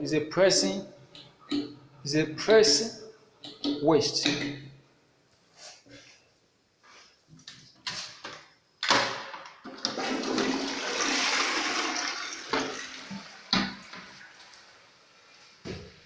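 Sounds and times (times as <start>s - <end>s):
toilet flushing water rush: 9.7s - 15.6s.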